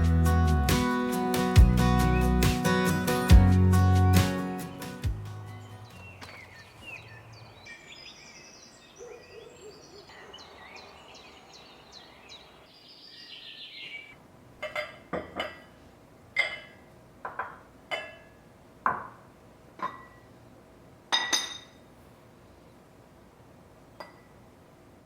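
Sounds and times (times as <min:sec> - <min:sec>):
birds chirping and singing: 0:01.6 - 0:03.1, 0:04.6 - 0:14.2.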